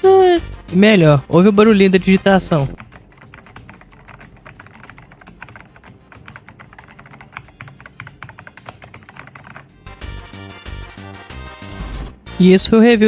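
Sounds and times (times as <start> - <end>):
mechanical keyboard typing: 2.1 - 9.6.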